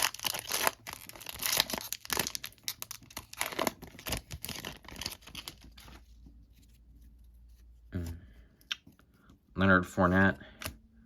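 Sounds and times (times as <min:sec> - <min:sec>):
foil wrapper tearing and crinkling: 0:00.0 - 0:05.9.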